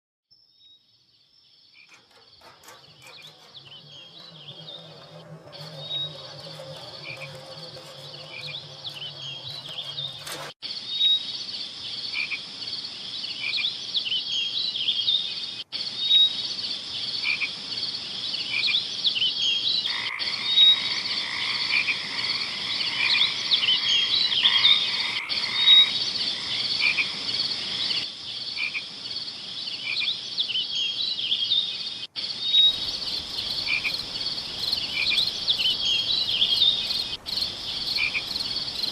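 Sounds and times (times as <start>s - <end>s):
low hum: 2.1s - 10.6s
frogs calling: 19.9s - 28.8s, 32.7s - 38.9s.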